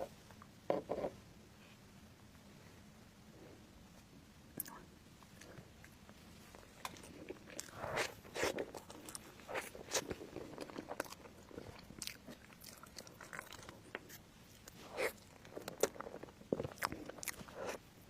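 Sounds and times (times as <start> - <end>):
person chewing crunchy food: 6.5 - 17.8.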